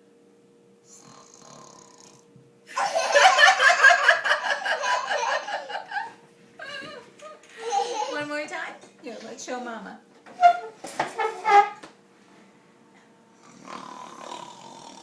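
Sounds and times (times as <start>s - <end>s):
child pretend snoring: 0.9s - 2.3s, 13.4s - 15.0s.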